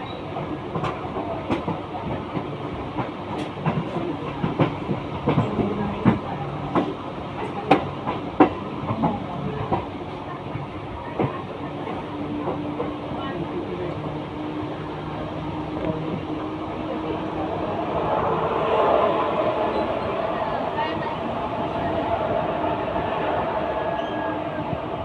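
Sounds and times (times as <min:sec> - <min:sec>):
train wheels clattering on rails: 0:00.0 - 0:14.2
train rumble: 0:00.0 - 0:25.0.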